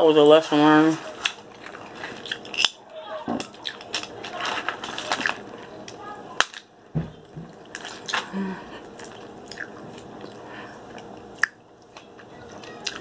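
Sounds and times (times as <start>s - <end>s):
chewing and biting: 1.2s - 2.8s, 3.5s - 5.5s, 7.6s - 13.0s.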